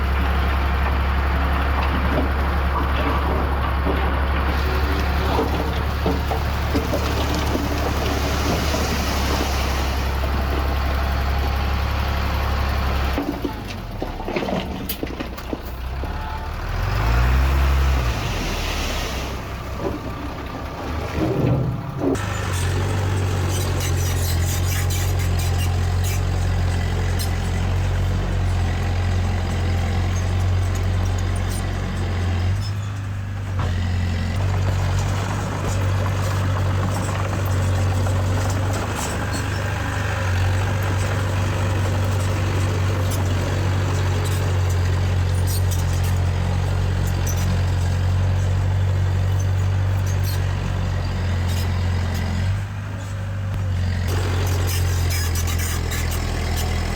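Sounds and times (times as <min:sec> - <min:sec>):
heavy diesel engine running: 0:00.0 - 0:56.9.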